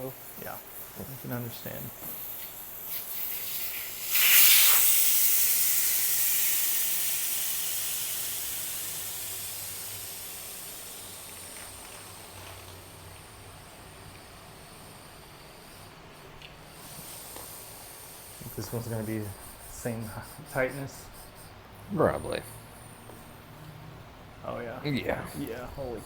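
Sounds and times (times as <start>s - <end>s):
air hissing out of tire: 0.0s - 13.9s, 16.7s - 21.6s.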